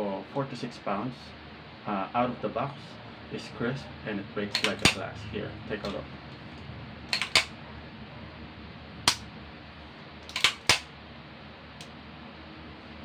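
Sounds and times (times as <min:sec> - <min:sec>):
pistol dry-fire clicks: 0:10.3 - 0:10.9.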